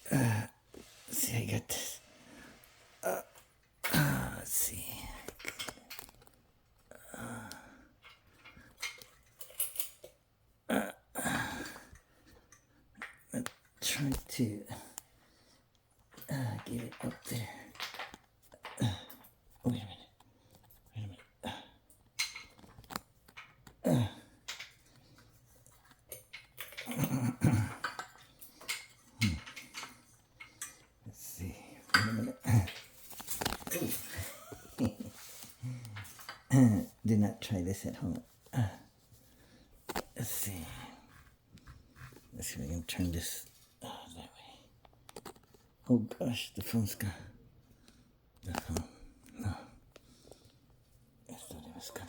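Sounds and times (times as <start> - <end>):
man grunting and breathing: 0.0 - 1.2, 6.9 - 7.9, 10.7 - 11.9
person grunting with effort: 0.1 - 0.5.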